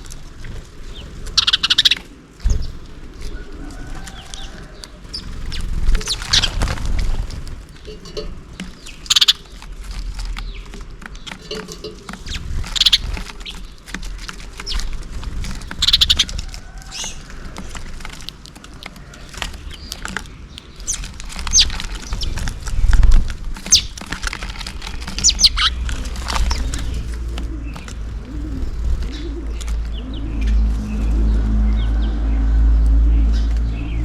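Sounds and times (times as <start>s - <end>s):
sparrows chirping: 0.0s - 34.0s
low rumble: 25.4s - 34.0s.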